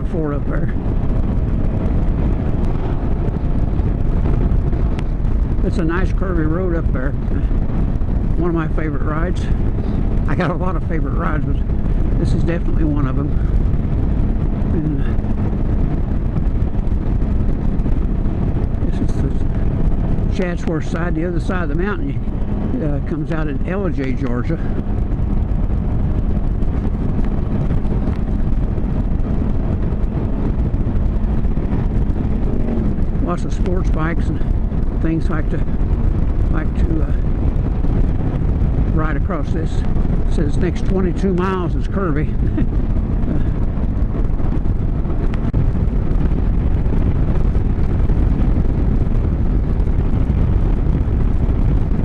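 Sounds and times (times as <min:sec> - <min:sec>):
motorcycle engine running: 0:00.0 - 0:52.0
wind noise on microphone: 0:00.0 - 0:52.0.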